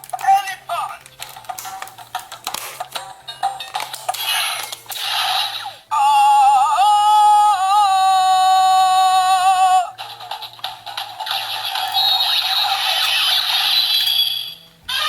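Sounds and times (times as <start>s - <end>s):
toy clicks: 10.0s - 14.6s.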